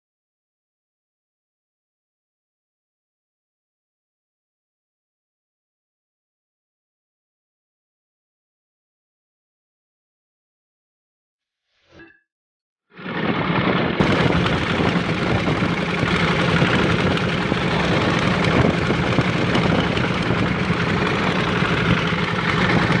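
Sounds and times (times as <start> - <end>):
engine droning: 14.0 - 23.0.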